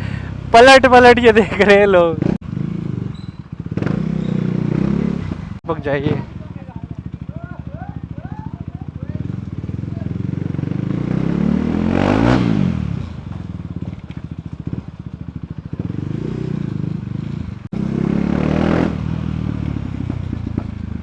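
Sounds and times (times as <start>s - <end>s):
motorcycle engine revving: 0.0s - 21.0s
exhaust pops and crackles: 5.6s - 10.0s, 12.9s - 17.8s, 19.2s - 21.0s.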